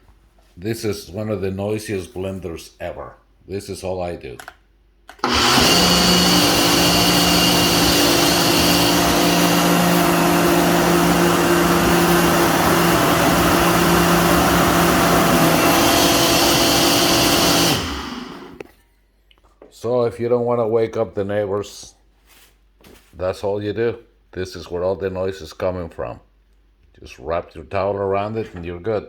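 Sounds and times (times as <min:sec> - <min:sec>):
blender motor whining: 0:05.2 - 0:18.6.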